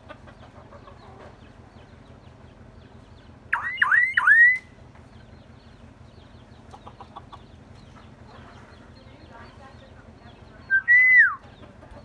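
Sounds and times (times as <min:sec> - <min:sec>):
myna whistling: 0:03.6 - 0:04.6, 0:10.7 - 0:11.4.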